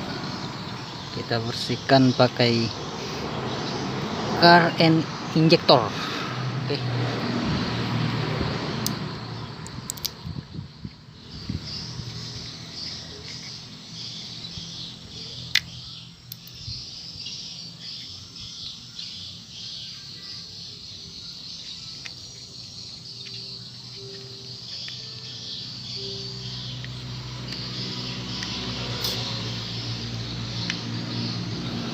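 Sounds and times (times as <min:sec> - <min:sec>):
insects chirping: 0:00.0 - 0:31.9
sharp click: 0:09.6 - 0:10.2.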